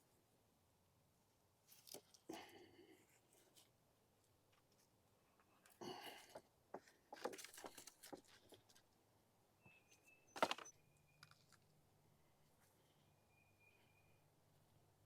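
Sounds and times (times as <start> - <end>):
faint rustles and clicks: 1.6 - 9.0
faint whistle-like tone: 9.6 - 11.3, 13.0 - 14.3.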